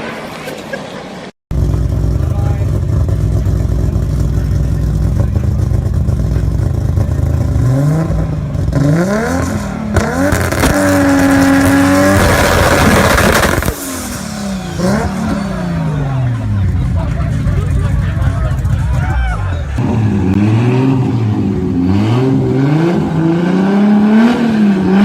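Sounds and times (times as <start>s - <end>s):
car engine idling and revving: 1.5s - 25.0s
loud rushing noise: 9.4s - 25.0s.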